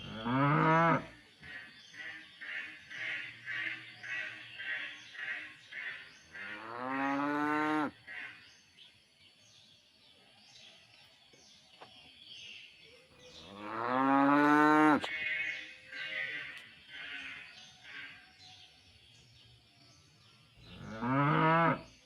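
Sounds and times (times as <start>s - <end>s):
cow mooing: 0.0s - 1.1s, 20.7s - 21.9s.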